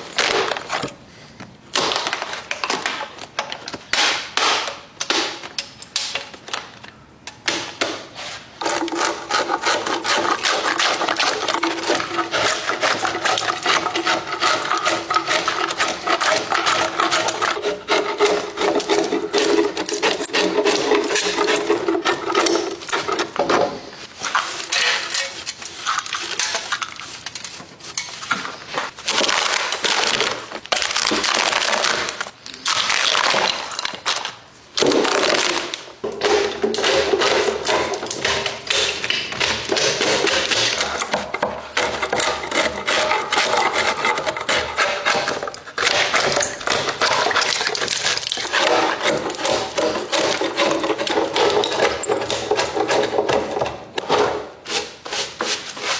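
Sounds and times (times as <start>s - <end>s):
tool scraping and rasping wood: 8.2s - 29.0s, 36.0s - 55.9s.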